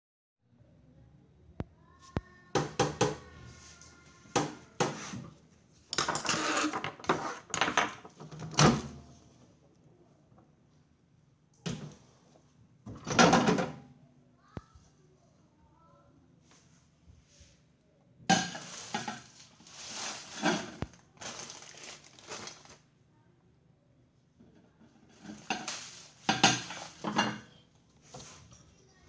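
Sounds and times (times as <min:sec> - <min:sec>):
hard objects knocking and clattering: 0:02.6 - 0:03.3, 0:04.3 - 0:08.9, 0:25.2 - 0:27.5.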